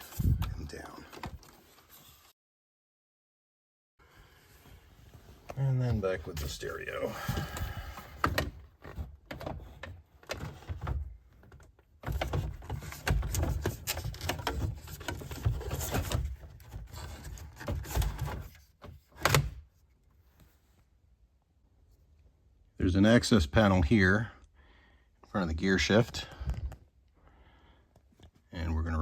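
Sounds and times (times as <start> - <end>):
plastic and metal scraping and clicks: 7.5 - 19.7.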